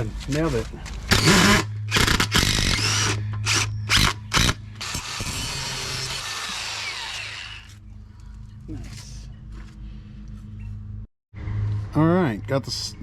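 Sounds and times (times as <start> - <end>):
power drill driving screws: 1.1 - 7.8.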